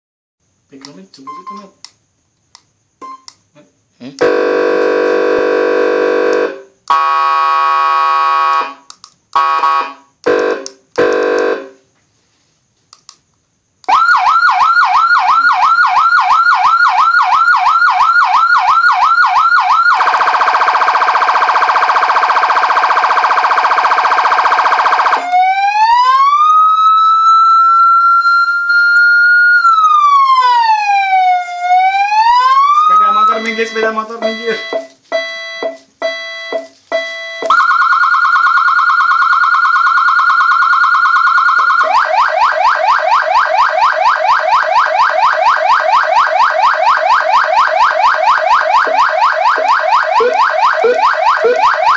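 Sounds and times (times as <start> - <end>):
electronic siren horn tone: 4.1 - 11.8, 13.9 - 51.9
siren slow wail: 4.2 - 8.8, 9.4 - 11.8, 13.9 - 51.9
siren fast warble: 13.9 - 34.8, 37.4 - 51.9.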